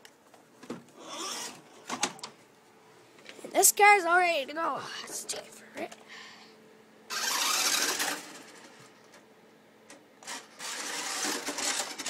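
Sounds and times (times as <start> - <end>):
toy car electric motor: 1.0 - 1.6, 7.1 - 8.8, 10.2 - 12.0.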